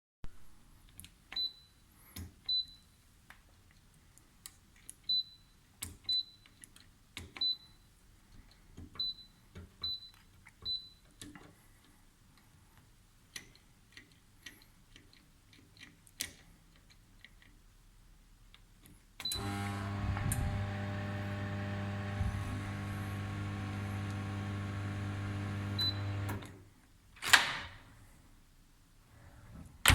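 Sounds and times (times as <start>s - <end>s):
microwave oven humming: 19.3s - 26.6s
microwave keypad beeps: 25.2s - 26.4s.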